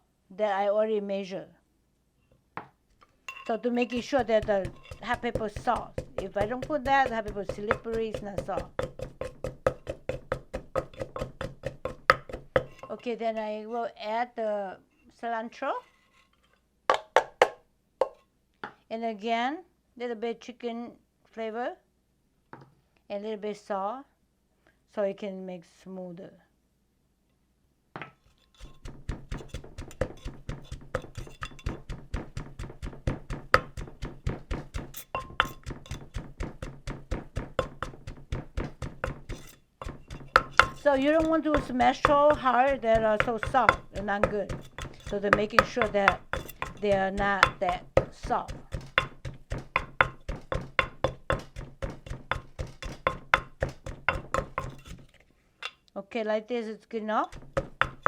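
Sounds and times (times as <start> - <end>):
pestle pounding in a mortar: 3.8 - 13.5, 16.9 - 18.2, 28.5 - 55.1, 57.2 - 58.0.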